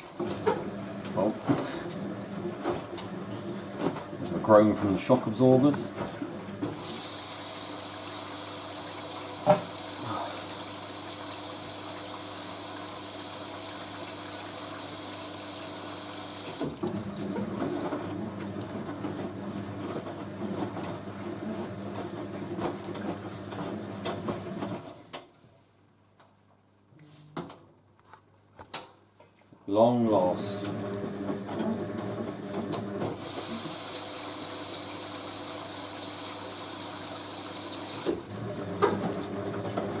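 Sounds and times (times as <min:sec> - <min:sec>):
washing machine drum sloshing: 0:16.4 - 0:24.9, 0:30.5 - 0:40.0.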